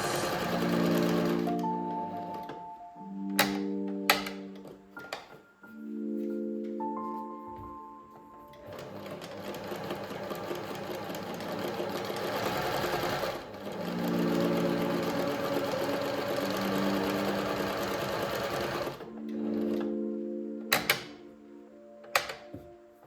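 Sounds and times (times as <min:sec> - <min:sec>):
sewing machine stitching clatter: 0:00.0 - 0:01.6, 0:08.6 - 0:19.9
sewing machine motor hum: 0:00.0 - 0:02.6, 0:08.6 - 0:20.0.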